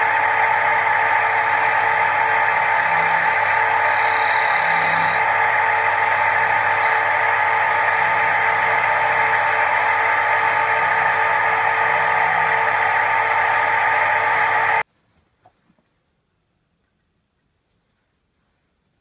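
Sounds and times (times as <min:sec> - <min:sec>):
lathe tool cutting wood hiss: 0:00.0 - 0:14.8
motor whine: 0:00.0 - 0:14.8.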